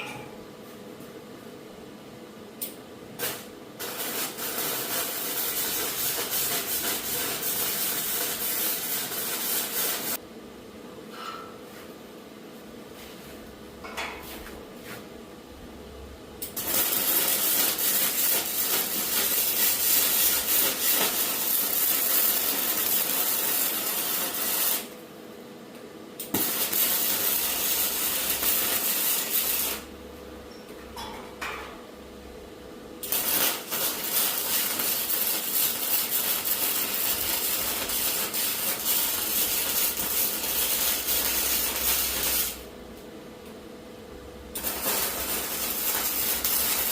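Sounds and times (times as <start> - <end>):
arc welding crackling: 2.6 - 10.2, 16.4 - 25.0, 26.2 - 29.9, 33.0 - 42.8, 44.5 - 46.9.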